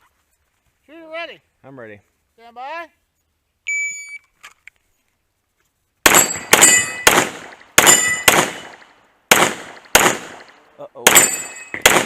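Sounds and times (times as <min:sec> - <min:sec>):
pistol shots: 0:06.0 - 0:12.0
metallic ring of steel targets: 0:06.1 - 0:07.1, 0:07.8 - 0:08.7, 0:11.1 - 0:11.9.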